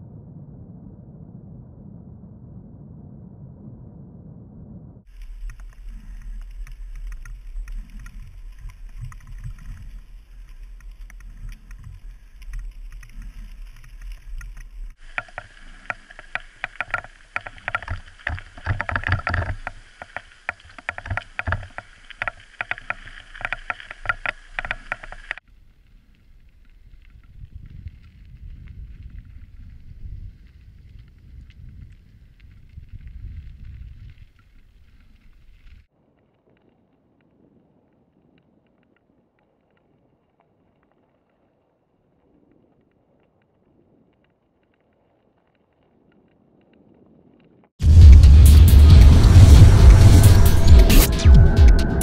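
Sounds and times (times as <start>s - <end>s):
bike rumbling over rough ground: 5.1s - 25.4s.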